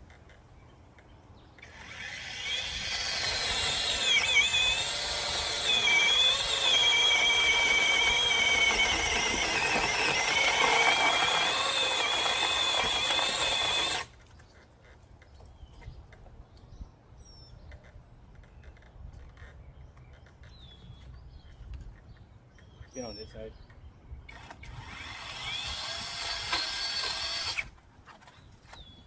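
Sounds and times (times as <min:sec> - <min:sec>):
chainsaw cutting branch: 0:01.6 - 0:14.2, 0:24.3 - 0:27.7.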